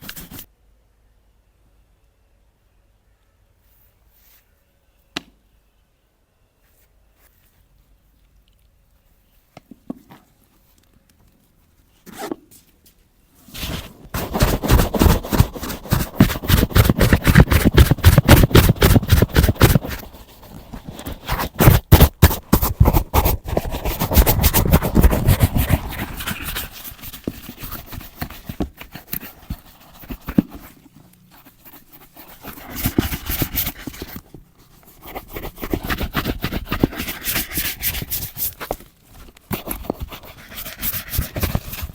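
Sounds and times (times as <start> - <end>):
brush scrubbing leather boot: 13.6 - 30.4, 31.5 - 34.2, 35.0 - 38.8.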